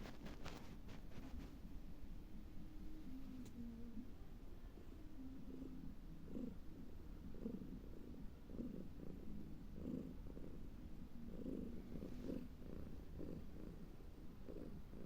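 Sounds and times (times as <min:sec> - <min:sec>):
cat rumbling breath: 0:05.4 - 0:15.0.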